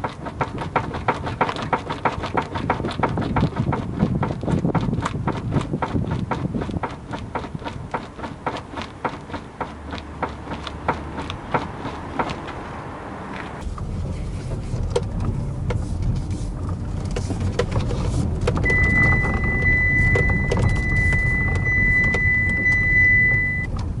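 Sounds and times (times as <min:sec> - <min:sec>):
sharp knocks from car front: 0:00.0 - 0:12.6
car driving low rumble: 0:00.0 - 0:24.0.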